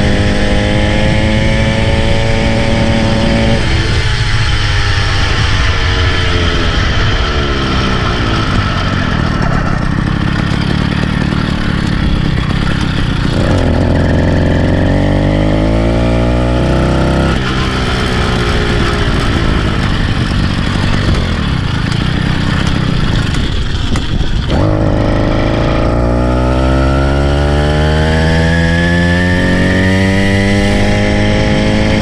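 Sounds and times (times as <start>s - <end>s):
small bicycle engine revving: 16.5s - 32.0s.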